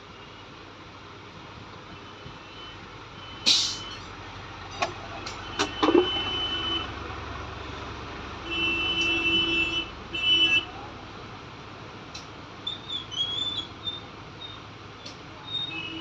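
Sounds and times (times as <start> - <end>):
loud short hiss burst: 3.4 - 4.0.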